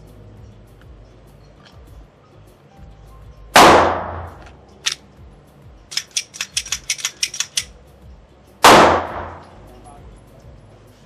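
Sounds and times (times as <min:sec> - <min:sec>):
sharp gunshot crack: 0:03.6 - 0:04.3, 0:08.6 - 0:09.4
pistol shot with ringing tail: 0:03.6 - 0:04.4, 0:08.6 - 0:09.5.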